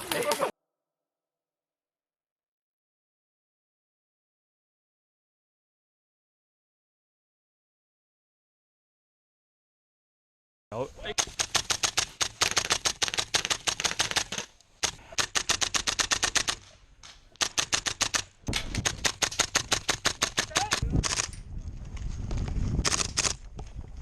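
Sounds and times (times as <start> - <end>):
airsoft rifle automatic bursts: 11.2 - 16.7, 17.4 - 21.3, 22.8 - 23.4.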